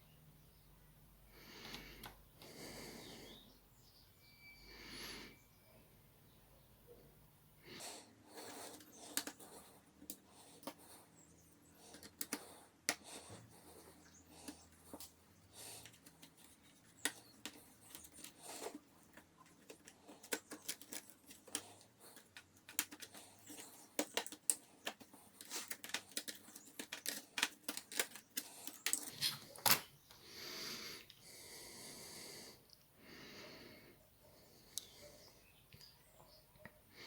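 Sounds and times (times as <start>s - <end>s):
laptop parts clicking and tapping: 8.4s - 30.2s.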